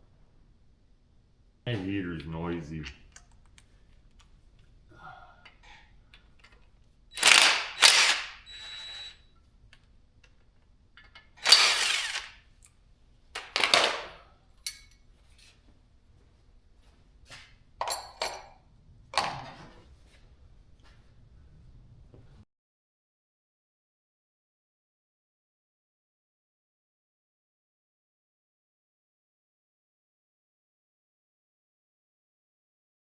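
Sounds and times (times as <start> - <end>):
power tool bursts: 7.1 - 9.2, 11.3 - 12.4.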